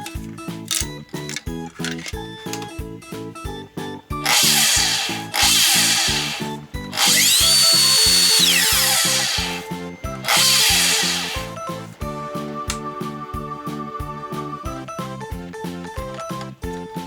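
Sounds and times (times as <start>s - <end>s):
background music: 0.0s - 17.0s
miter saw motor whine: 4.3s - 11.7s.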